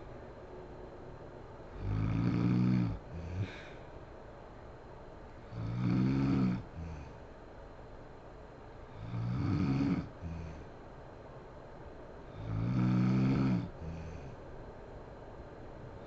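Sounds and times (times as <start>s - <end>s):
woman snoring: 1.8s - 3.7s, 5.4s - 7.2s, 8.9s - 10.6s, 12.3s - 14.4s
faint breath: 2.9s - 4.1s, 10.1s - 10.8s, 13.7s - 14.5s.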